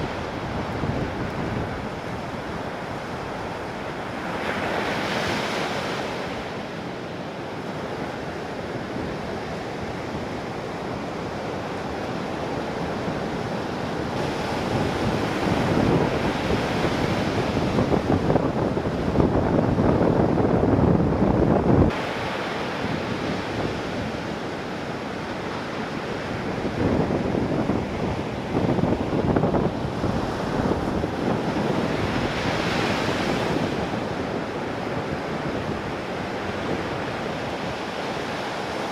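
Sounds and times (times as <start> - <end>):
wind buffeting microphone: 0.0 - 6.6, 8.7 - 38.9
heavy surf breaking: 11.6 - 38.9.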